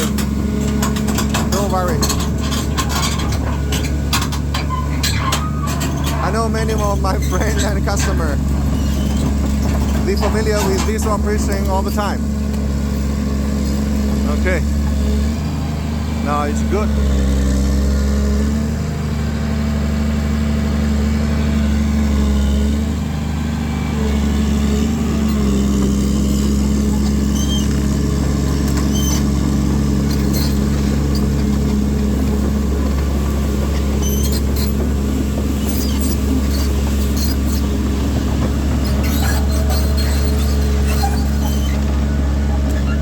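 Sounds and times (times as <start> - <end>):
short squeaks and clicks: 0.0 - 15.1, 24.2 - 33.0, 33.6 - 43.0
excavator diesel engine running: 0.0 - 43.0.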